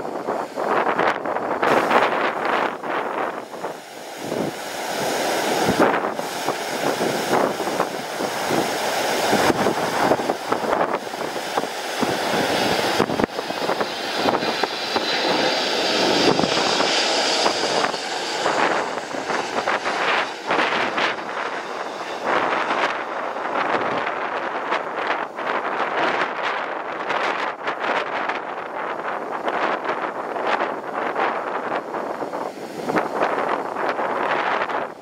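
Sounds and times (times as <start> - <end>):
jet engines whining: 0.0 - 27.1
wind buffeting microphone: 0.0 - 35.0.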